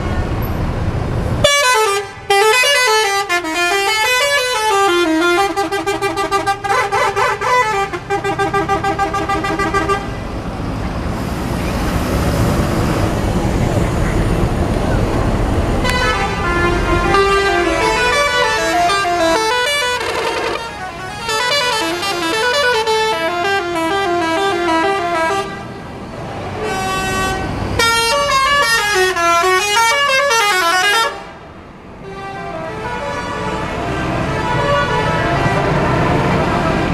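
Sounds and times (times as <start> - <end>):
engine and traffic rumble: 0.0 - 36.9
musical bus horns: 1.4 - 10.2, 15.8 - 25.9, 26.6 - 31.4, 32.0 - 36.9.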